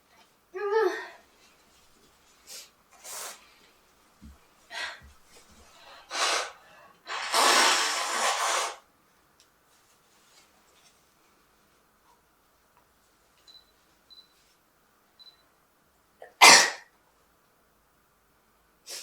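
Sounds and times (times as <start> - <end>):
person sneezing: 6.1 - 8.8, 16.2 - 16.9.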